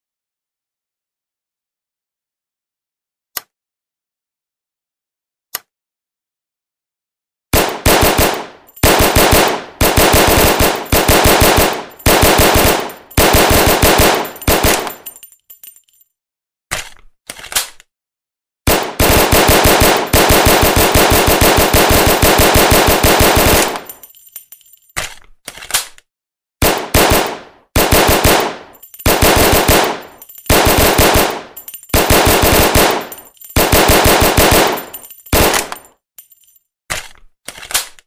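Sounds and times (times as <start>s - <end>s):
submachine gun firing full auto: 7.6s - 15.0s, 18.7s - 23.9s, 26.6s - 35.8s.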